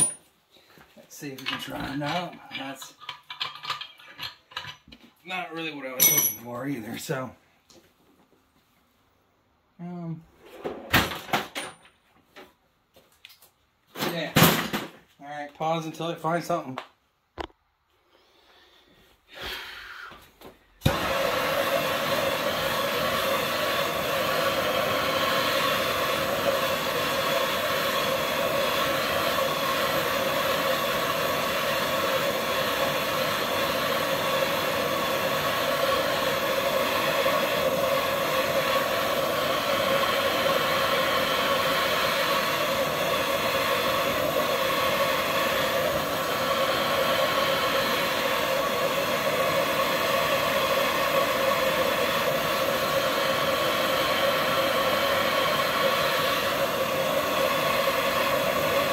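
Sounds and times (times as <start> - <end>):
heating tool blowing hiss: 18.2 - 58.9.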